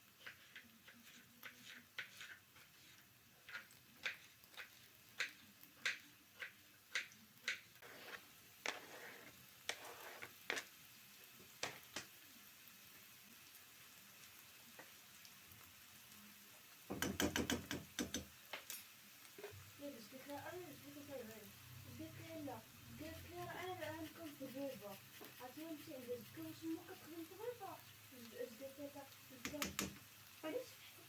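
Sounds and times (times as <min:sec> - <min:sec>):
faint steady hiss: 0:00.0 - 0:31.0
light clicks and taps: 0:29.4 - 0:30.0.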